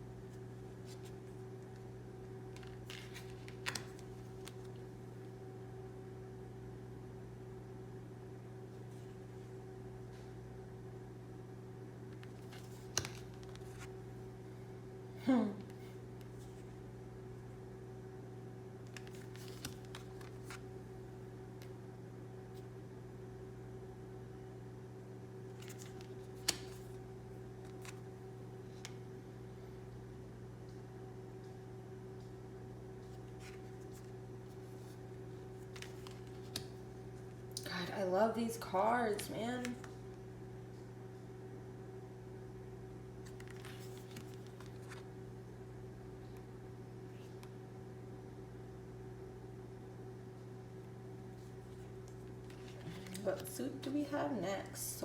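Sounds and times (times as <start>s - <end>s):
steady low hum: 0.0s - 55.0s
cards being handled: 0.3s - 1.8s, 2.5s - 4.8s, 12.1s - 14.0s, 18.9s - 20.7s, 25.5s - 27.0s, 27.6s - 28.1s, 33.0s - 37.3s, 43.2s - 45.1s, 51.4s - 53.5s.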